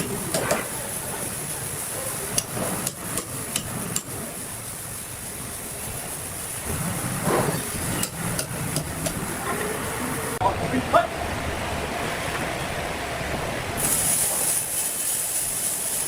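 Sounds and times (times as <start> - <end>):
machinery hiss and rumble: 0.0 - 16.0.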